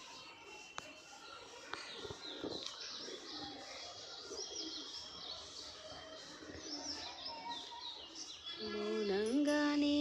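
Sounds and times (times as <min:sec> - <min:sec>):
birds chirping: 0:00.0 - 0:10.0.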